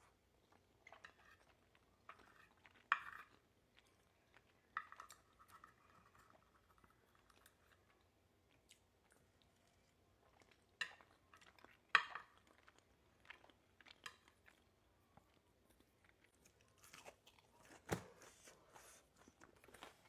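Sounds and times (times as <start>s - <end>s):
person chewing and biting: 16.1s - 20.0s.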